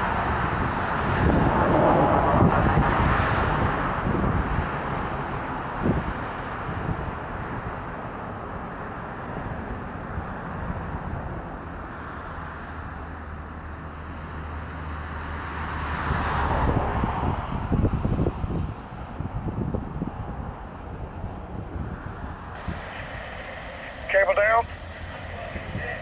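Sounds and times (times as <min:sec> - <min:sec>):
wind on microphone: 0:00.0 - 0:07.7, 0:16.6 - 0:24.1
low engine hum: 0:00.0 - 0:26.0
road traffic: 0:00.0 - 0:26.0
vehicle passing: 0:20.9 - 0:26.0.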